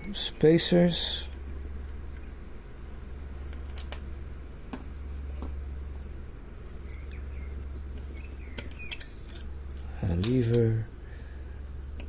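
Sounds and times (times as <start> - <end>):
steady low hum: 0.0 - 12.0
light metallic clicks of lock parts: 8.6 - 10.8.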